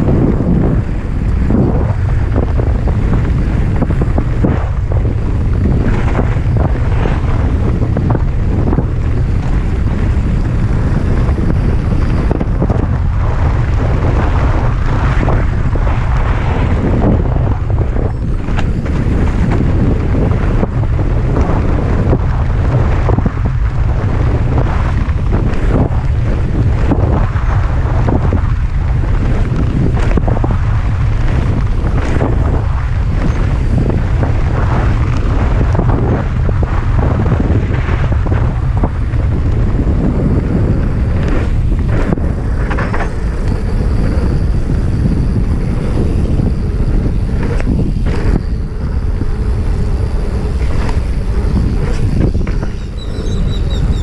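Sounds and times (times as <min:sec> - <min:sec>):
wind buffeting microphone: 0:00.0 - 0:54.0.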